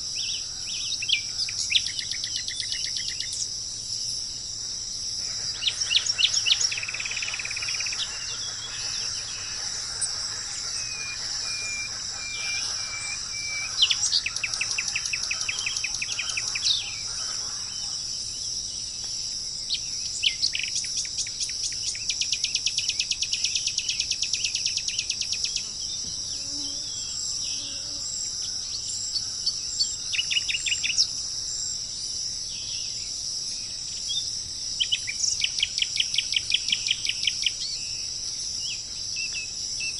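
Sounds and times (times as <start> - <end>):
insects droning: 0.0 - 39.9
birds whistling and trilling: 5.2 - 18.2.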